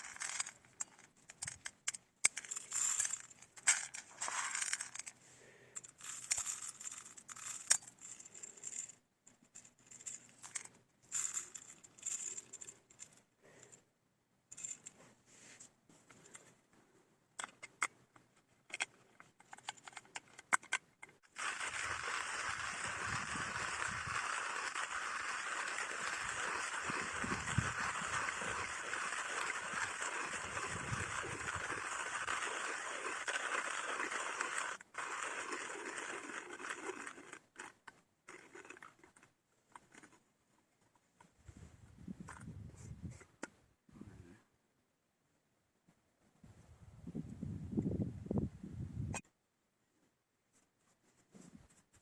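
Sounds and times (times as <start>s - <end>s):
grinder clicks and rattles: 0.0s - 5.2s, 5.8s - 13.7s, 17.4s - 40.2s
hand coffee grinder grinding: 0.0s - 5.2s, 5.9s - 13.1s, 18.7s - 40.2s.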